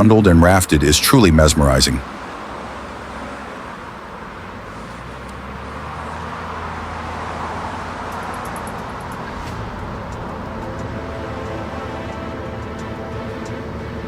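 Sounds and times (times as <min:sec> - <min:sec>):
heavy machinery engine running: 0:02.0 - 0:14.0.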